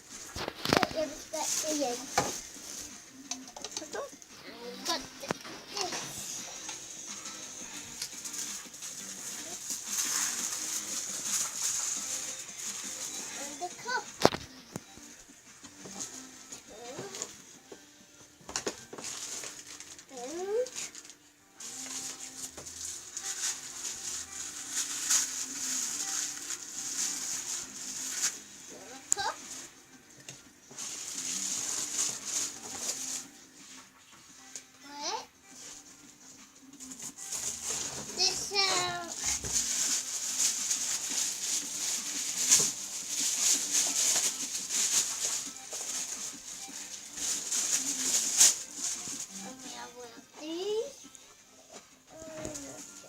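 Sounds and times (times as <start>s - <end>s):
packaging rustling: 0.0s - 3.0s, 7.1s - 14.5s, 18.6s - 29.7s, 30.7s - 33.3s, 36.9s - 49.6s
sharp crackle: 8.0s - 14.4s, 20.7s - 28.4s.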